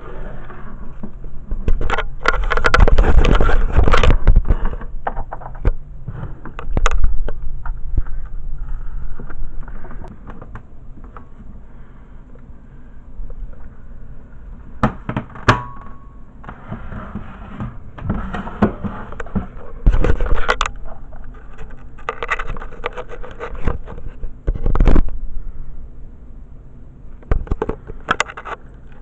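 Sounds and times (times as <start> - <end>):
packaging rustling and scraping: 1.7 - 7.2, 16.5 - 24.3.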